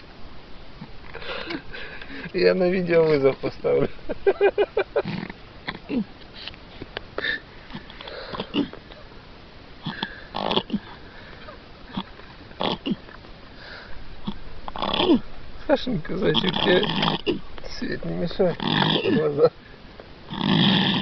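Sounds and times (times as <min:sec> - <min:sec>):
man snoring: 0:20.3 - 0:21.0.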